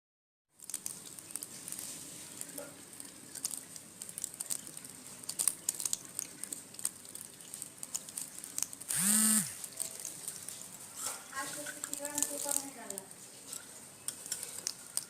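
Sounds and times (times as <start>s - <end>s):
small clicks: 3.4s - 10.2s.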